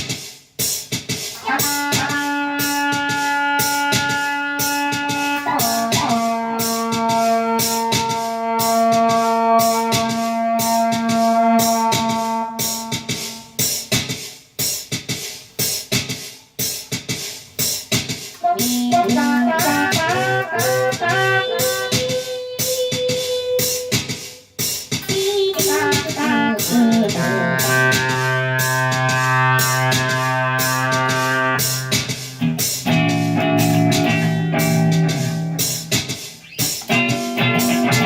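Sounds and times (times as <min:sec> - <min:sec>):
steady drum beat: 0:00.0 - 0:38.0
warbling horn notes: 0:01.4 - 0:13.6, 0:18.4 - 0:22.2, 0:25.4 - 0:35.8.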